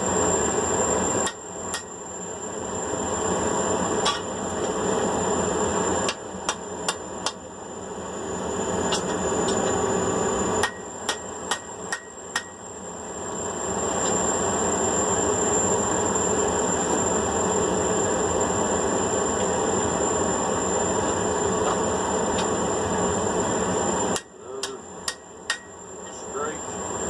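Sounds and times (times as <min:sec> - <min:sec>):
hammer striking steel on anvil: 0:01.2 - 0:02.0, 0:04.0 - 0:04.3, 0:10.6 - 0:12.6, 0:24.2 - 0:25.8.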